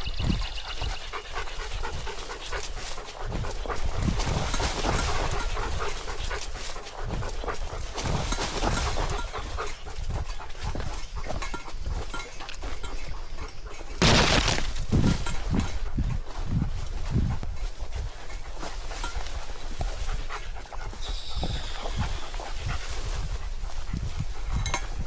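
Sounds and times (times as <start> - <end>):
dog panting: 0.0 - 14.0, 15.3 - 25.0.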